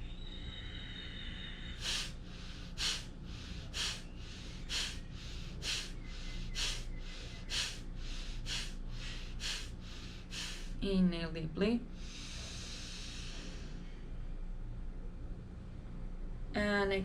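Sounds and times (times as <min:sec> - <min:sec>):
forceful nasal exhalations: 0:01.7 - 0:10.8.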